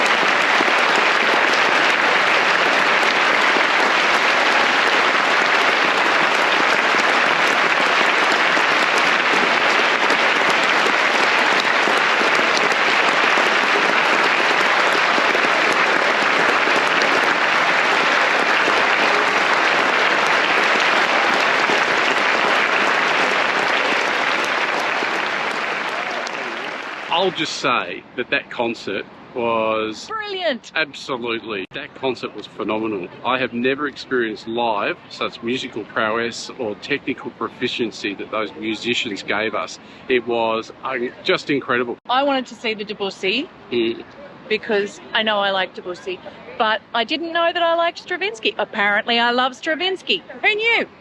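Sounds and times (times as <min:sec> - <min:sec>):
audience applauding: 0:00.0 - 0:28.7, 0:32.0 - 0:41.9, 0:43.8 - 0:44.1.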